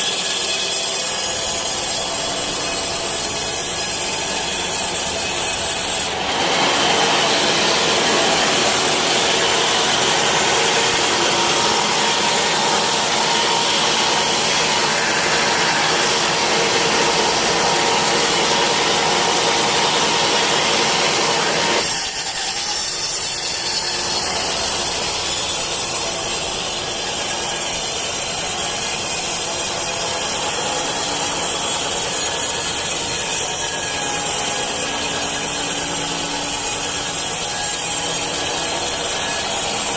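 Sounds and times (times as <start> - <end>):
saw rasping through wood: 0.0 - 39.9.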